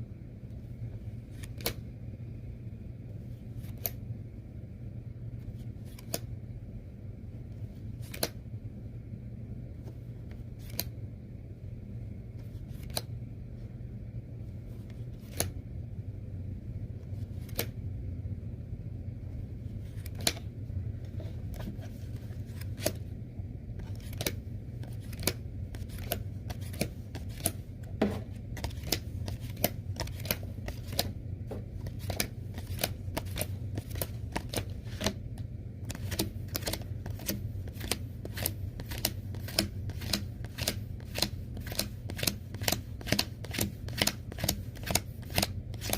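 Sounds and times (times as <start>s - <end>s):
playing cards snapping and clicking: 1.4s - 1.8s, 5.9s - 6.3s, 8.0s - 8.4s, 10.6s - 10.9s, 12.8s - 13.1s, 15.2s - 15.5s, 17.4s - 17.8s, 20.0s - 20.4s, 22.5s - 23.0s, 23.8s - 27.6s, 28.6s - 31.1s, 31.8s - 35.2s, 35.9s - 45.9s.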